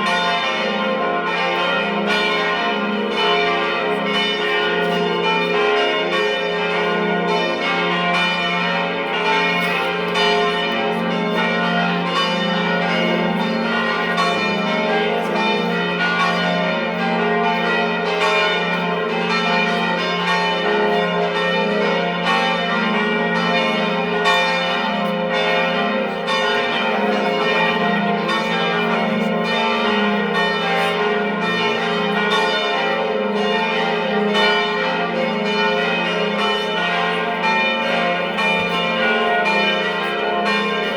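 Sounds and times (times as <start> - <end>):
church bells pealing: 0.0 - 40.9.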